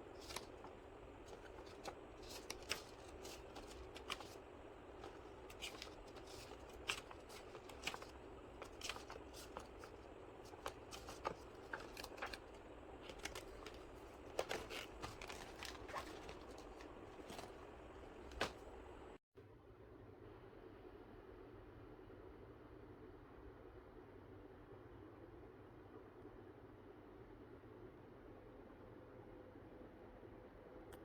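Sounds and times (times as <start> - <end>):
plastic packaging rustling: 0.0 - 19.1.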